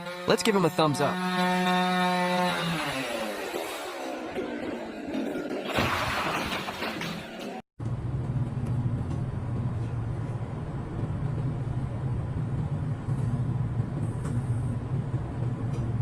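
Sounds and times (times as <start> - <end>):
engine running with low hum: 7.8 - 16.0.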